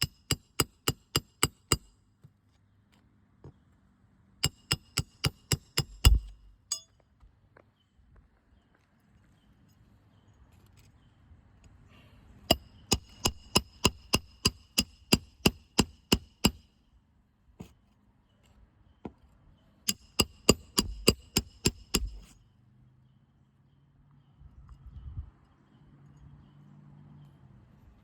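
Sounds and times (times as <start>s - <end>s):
hammer striking metal: 4.4s - 6.9s, 19.9s - 22.3s.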